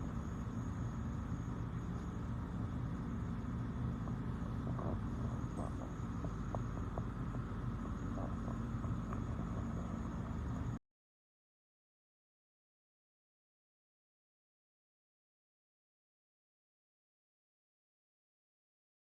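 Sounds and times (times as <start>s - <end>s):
humidifier humming: 0.0s - 10.8s
faint ticks: 4.0s - 10.8s.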